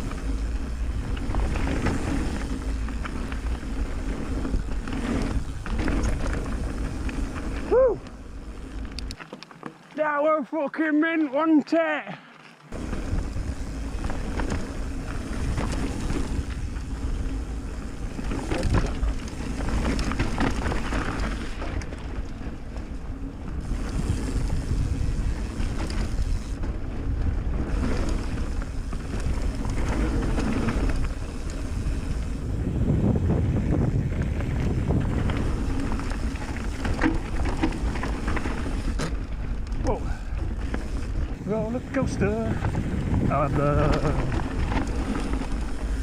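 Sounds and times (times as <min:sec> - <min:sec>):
mountain bike rumbling and rattling: 0:00.0 - 0:09.9, 0:12.4 - 0:46.0
wind buffeting microphone: 0:12.7 - 0:46.0.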